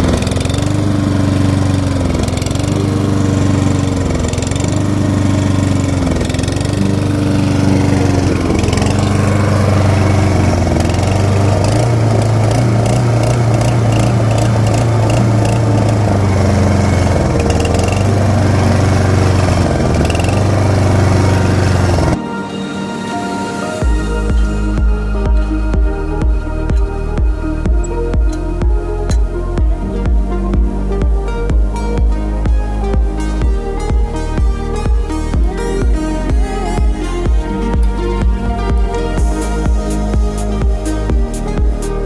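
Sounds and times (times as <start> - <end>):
lawn mower engine rough idle: 0.0 - 22.2.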